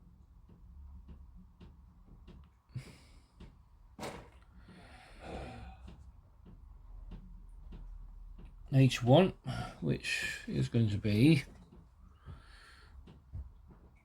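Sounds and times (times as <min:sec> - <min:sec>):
person breathing: 0:04.5 - 0:06.0, 0:09.4 - 0:09.8, 0:12.1 - 0:13.1.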